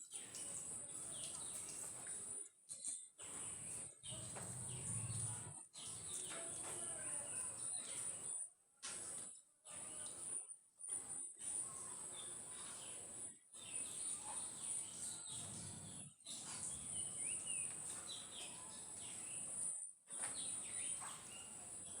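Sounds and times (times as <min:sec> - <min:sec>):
bird chirps: 0:11.4 - 0:22.0.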